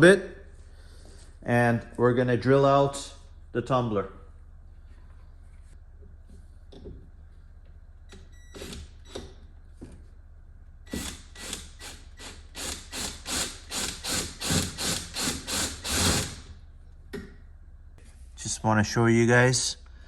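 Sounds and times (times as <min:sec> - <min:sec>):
power drill pulsing: 0:10.9 - 0:16.5.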